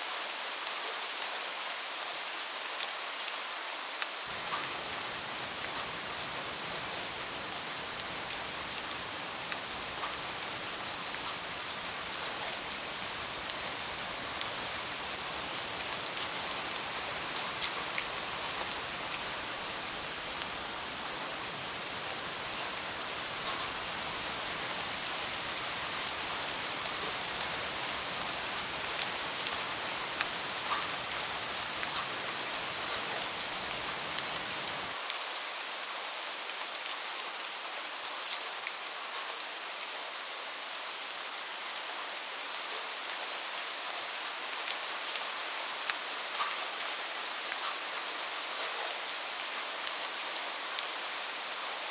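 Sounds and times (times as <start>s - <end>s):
steady rain hissing: 0.0s - 51.9s
raindrops ticking on surfaces: 2.8s - 35.4s, 44.3s - 51.6s.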